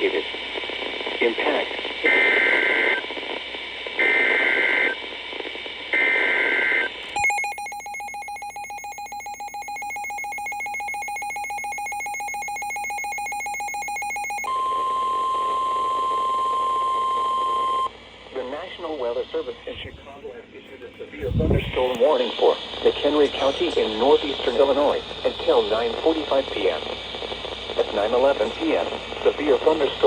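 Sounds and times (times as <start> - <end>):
steady single-pitch alert tone: 7.2 - 17.9.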